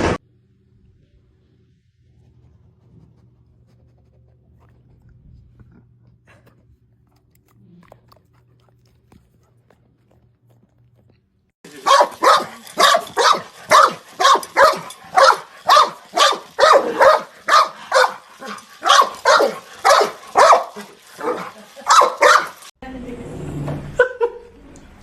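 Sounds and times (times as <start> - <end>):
dog barking rapidly: 11.7 - 22.7.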